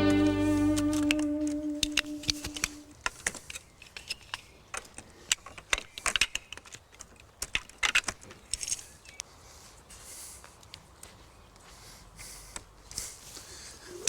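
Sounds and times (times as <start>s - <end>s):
held guitar note: 0.0s - 2.9s.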